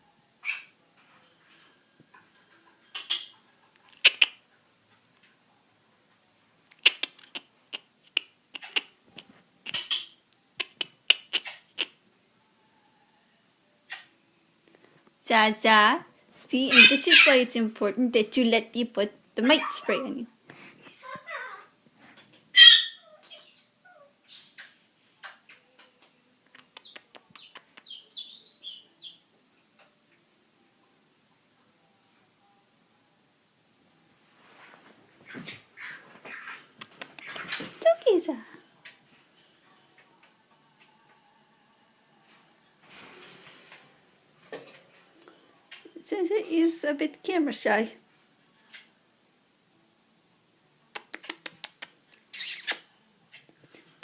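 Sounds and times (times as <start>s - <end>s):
bird chirping: 2.8s - 4.4s, 9.7s - 12.0s, 22.3s - 26.0s, 26.6s - 29.3s, 52.3s - 52.8s
sharp clicks: 51.0s - 52.8s.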